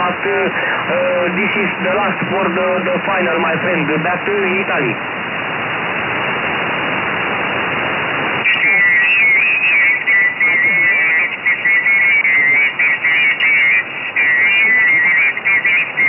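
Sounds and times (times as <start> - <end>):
radio receiver hiss: 0.0 - 16.0
warbling whistle-like radio tones: 7.3 - 16.0.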